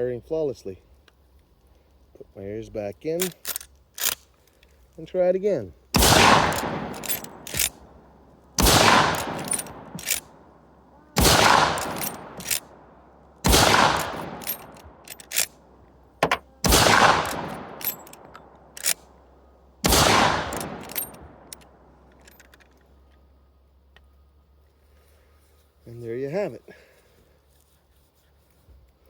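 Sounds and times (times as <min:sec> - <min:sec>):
rifle lever clicking: 0:03.2 - 0:04.3, 0:06.0 - 0:07.8, 0:08.6 - 0:10.3, 0:11.2 - 0:12.7, 0:13.5 - 0:15.5, 0:16.2 - 0:19.0, 0:19.9 - 0:22.8
rifle shots echoing: 0:05.9 - 0:10.6, 0:11.2 - 0:15.5, 0:16.2 - 0:19.0, 0:19.8 - 0:21.9.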